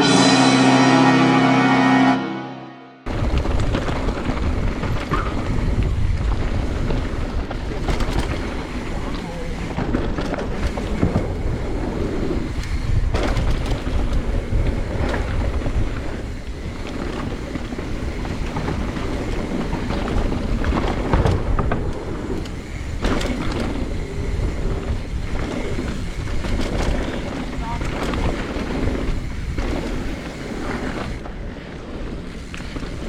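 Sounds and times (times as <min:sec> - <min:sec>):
bike knocking and rattling over rocks: 0:03.1 - 0:33.0
wind rushing on microphone: 0:03.1 - 0:33.0.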